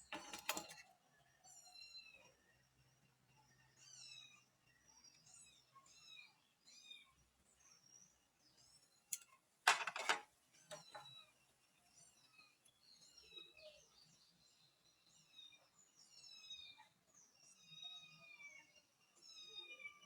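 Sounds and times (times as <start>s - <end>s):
plastic parts clicking: 0.1s - 0.8s, 9.1s - 11.0s.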